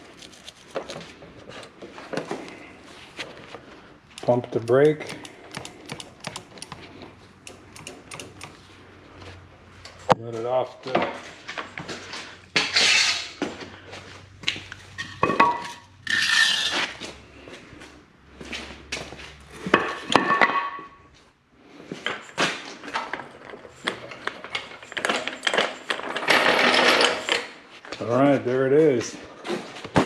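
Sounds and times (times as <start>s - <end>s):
metal clinks and knocks: 4.2s - 8.6s.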